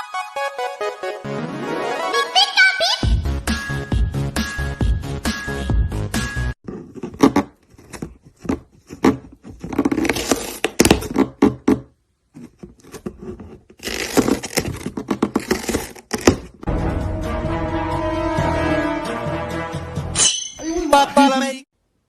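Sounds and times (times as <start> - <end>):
music: 0.0 - 6.6, 16.7 - 21.6
scraping and rustling: 6.6 - 11.4, 12.3 - 16.6.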